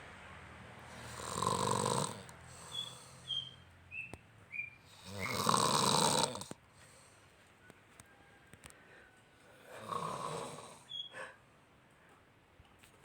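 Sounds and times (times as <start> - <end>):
heavy snoring: 0.9 - 3.2, 4.9 - 6.6, 9.6 - 10.9.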